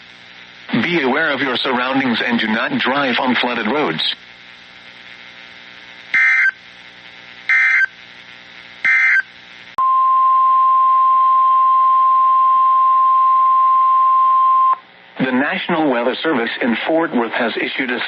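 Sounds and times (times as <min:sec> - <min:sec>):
screechy digital data tones: 0:06.2 - 0:06.6, 0:07.5 - 0:07.9, 0:08.9 - 0:09.3
steady warning alarm tone: 0:06.2 - 0:06.6, 0:07.5 - 0:07.9, 0:08.9 - 0:09.3.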